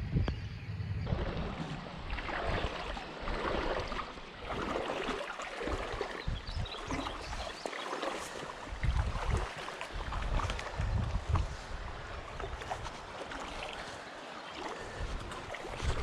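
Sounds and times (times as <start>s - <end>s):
low rumbles on microphone: 0.0s - 4.7s, 5.7s - 7.5s, 8.7s - 11.8s
creek water rippling: 1.1s - 16.0s.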